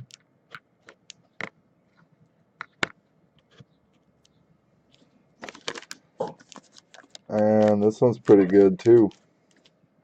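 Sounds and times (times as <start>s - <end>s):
trading cards clicking: 6.6s - 9.7s.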